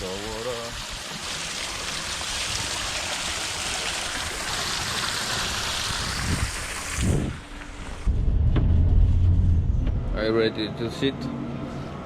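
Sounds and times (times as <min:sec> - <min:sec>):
running water rushing: 0:00.0 - 0:08.1
low thuds: 0:08.0 - 0:10.3.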